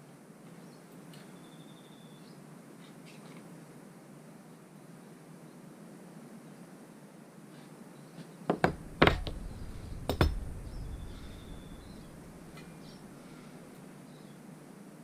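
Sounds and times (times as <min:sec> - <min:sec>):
mountain bike knocks and clanks: 0:08.5 - 0:12.7.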